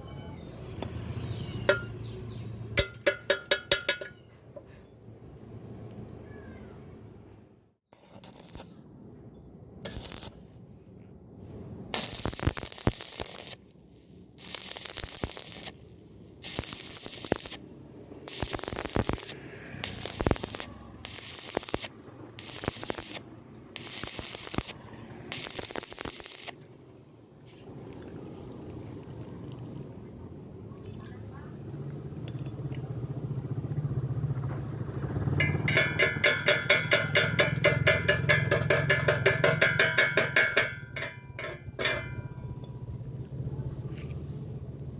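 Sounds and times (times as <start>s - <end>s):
welding arc crackling and hissing: 7.9s - 8.8s, 9.9s - 10.5s, 11.9s - 26.6s.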